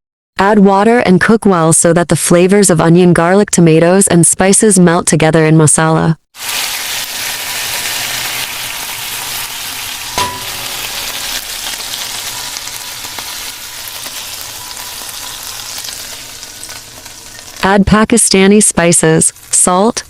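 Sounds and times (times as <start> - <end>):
masala sizzling in a pan: 6.3 - 20.0
utensil clinking against pan: 10.1 - 17.6.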